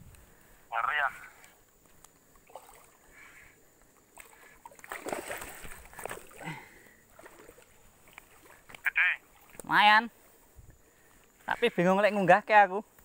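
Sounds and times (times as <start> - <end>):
fish splashing at water surface: 2.4 - 3.1, 4.1 - 6.5.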